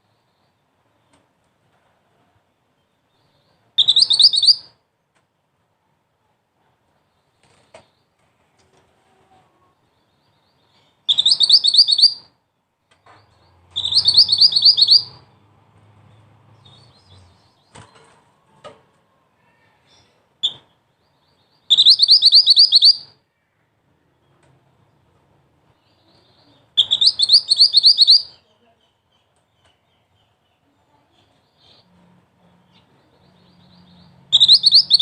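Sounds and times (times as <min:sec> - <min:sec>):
bird high rapid trills: 0:13.8 - 0:15.2, 0:34.3 - 0:35.0.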